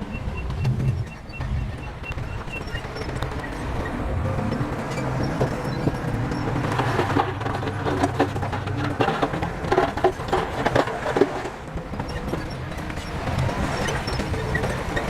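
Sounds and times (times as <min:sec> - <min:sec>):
clanks and rattles: 0:00.0 - 0:15.0
heavy machinery diesel engine: 0:00.0 - 0:15.0.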